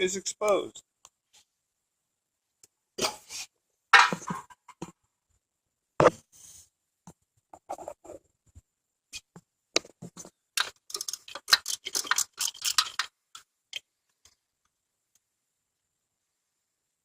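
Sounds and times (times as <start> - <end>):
hand tools clicking and rattling: 10.6 - 13.5.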